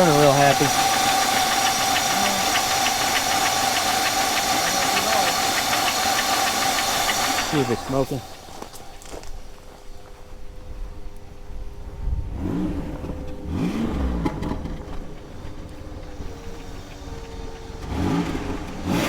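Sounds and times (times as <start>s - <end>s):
car engine revving: 0.0s - 19.0s.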